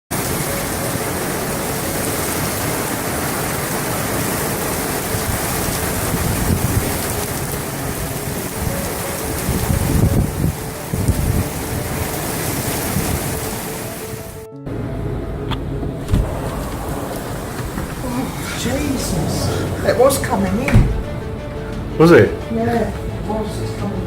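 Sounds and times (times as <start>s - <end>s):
heavy rain pouring: 0.1s - 24.0s
low rumbles: 14.6s - 24.0s.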